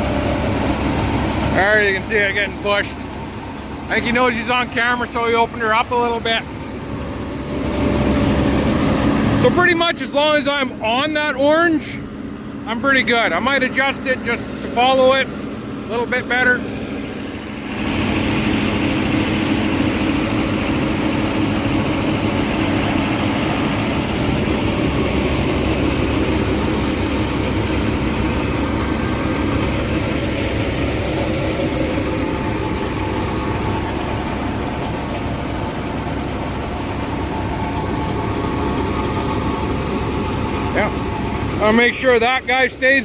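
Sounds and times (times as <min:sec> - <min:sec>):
tractor engines droning: 0:00.0 - 0:43.0
grain rushing through machinery: 0:16.6 - 0:42.8.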